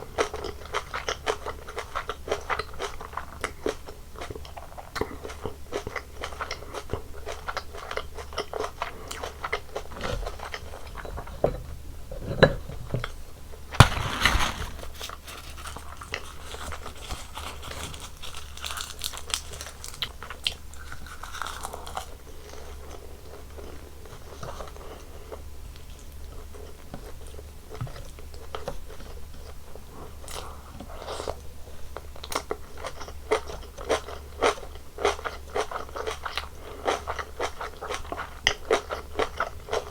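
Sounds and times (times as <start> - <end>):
crunchy bites and chewing: 13.8 - 15.7.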